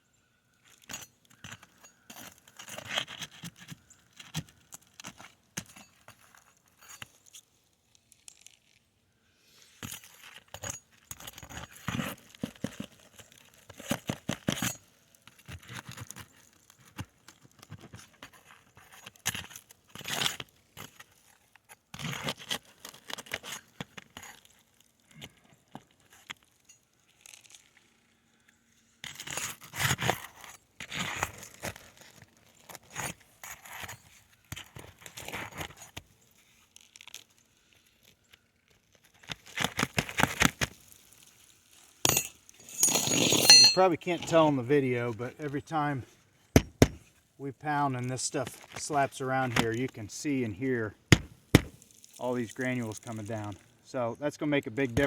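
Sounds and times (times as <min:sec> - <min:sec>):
hand tools prying and scraping shingles: 0:00.8 - 0:07.2, 0:09.8 - 0:21.3, 0:39.2 - 0:44.6, 0:46.5 - 0:47.1, 0:51.0 - 0:53.5
shingle tabs slapping: 0:46.6 - 0:47.1, 0:51.1 - 0:52.2.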